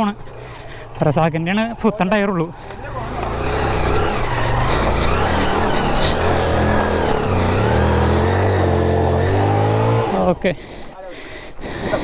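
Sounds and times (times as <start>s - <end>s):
motorcycle engine revving: 2.5s - 10.5s.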